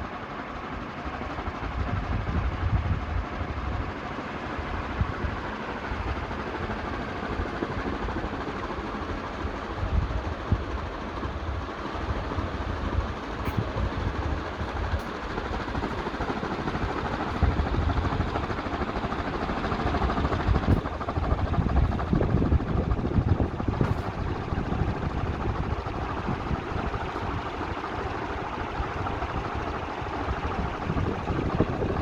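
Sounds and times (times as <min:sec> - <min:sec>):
ceiling fan running: 0:00.0 - 0:32.0
low rumble of moving air: 0:01.4 - 0:03.9, 0:19.8 - 0:32.0.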